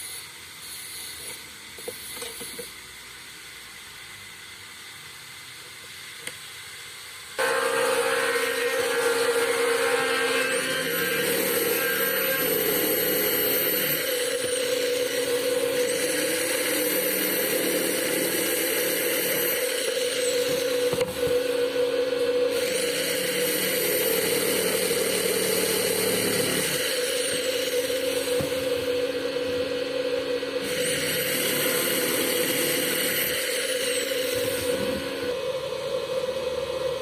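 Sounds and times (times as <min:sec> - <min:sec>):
power tool motor whining: 0:07.4 - 0:35.4.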